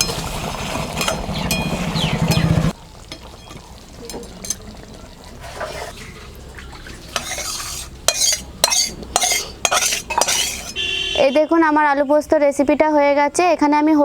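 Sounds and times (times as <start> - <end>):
metal spoon scraping a pan: 0.0 - 1.7, 5.4 - 6.2, 6.9 - 10.8.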